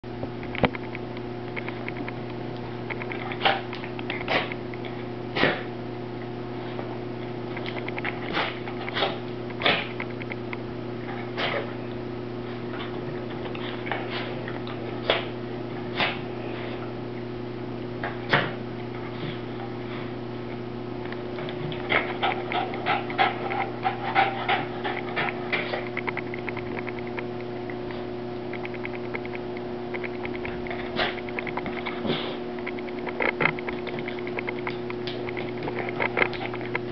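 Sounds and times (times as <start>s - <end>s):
low hum: 0.1s - 36.9s
puppy sneezing: 5.4s - 5.7s, 8.3s - 10.0s, 16.0s - 16.2s.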